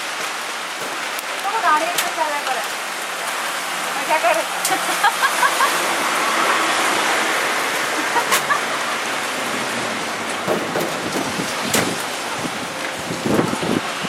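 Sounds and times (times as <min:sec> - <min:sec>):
wind gusts buffeting microphone: 0:10.5 - 0:14.0
strong wind rushing: 0:10.9 - 0:14.0.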